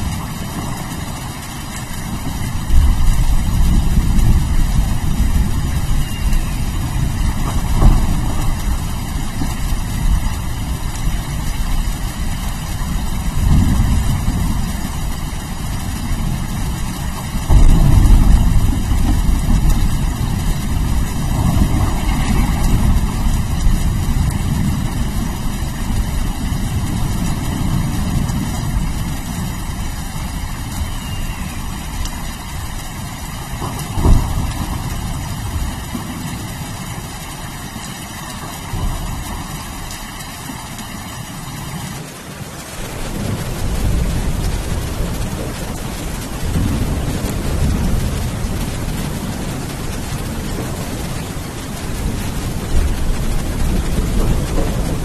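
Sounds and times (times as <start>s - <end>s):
rolling thunder rumble: 0.0s - 55.0s
steady rain: 0.0s - 55.0s
sharp thunder crack: 17.5s - 25.4s.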